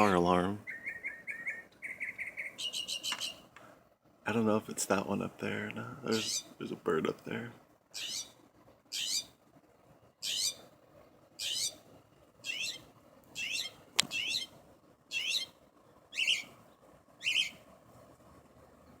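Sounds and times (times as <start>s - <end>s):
bird warbling: 0.0s - 3.5s, 6.1s - 6.7s, 7.9s - 9.4s, 10.2s - 10.8s, 11.4s - 16.6s, 17.2s - 17.6s.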